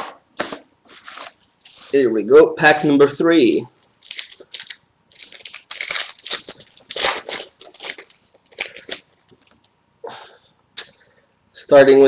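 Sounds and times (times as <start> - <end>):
wrapper tearing and crinkling: 0.9 - 2.0, 2.8 - 9.2.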